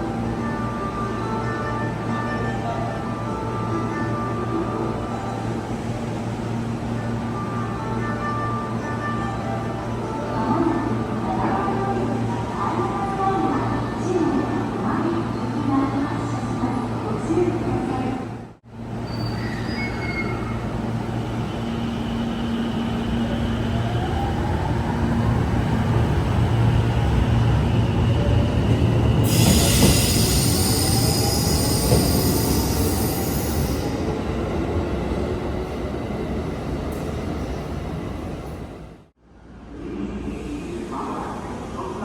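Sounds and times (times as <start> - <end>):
train rumbling past: 0.0 - 42.0
high squeal of train wheels: 18.9 - 25.2, 26.7 - 34.3.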